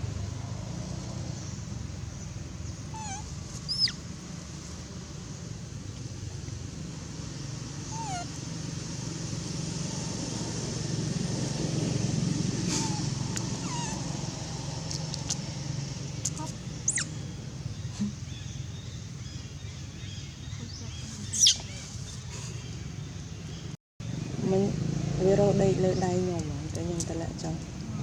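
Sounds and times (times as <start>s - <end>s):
traffic rumble: 0.0s - 28.0s
baby monkey squeaking: 2.9s - 4.0s, 7.9s - 8.4s, 12.8s - 14.0s, 16.2s - 17.2s, 20.8s - 21.9s.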